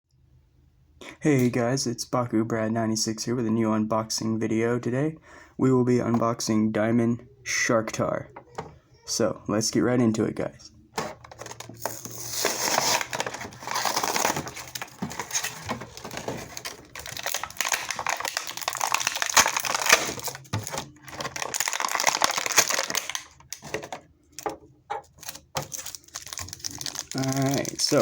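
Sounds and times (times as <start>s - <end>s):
packaging crinkling and tearing: 11.2s - 28.0s.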